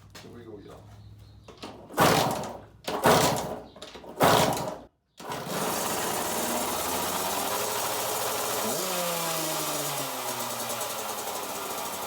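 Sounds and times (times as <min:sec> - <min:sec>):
two-stroke engine starting: 0:04.3 - 0:12.0.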